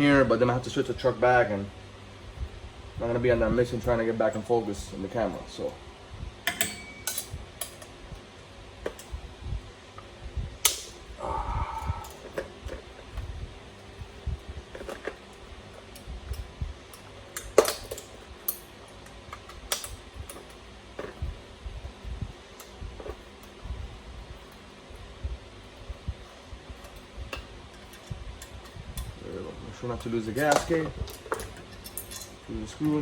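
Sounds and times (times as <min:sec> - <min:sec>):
metal tools clicking and tapping: 0:06.4 - 0:07.9, 0:14.7 - 0:21.3, 0:25.7 - 0:29.2, 0:30.0 - 0:33.0.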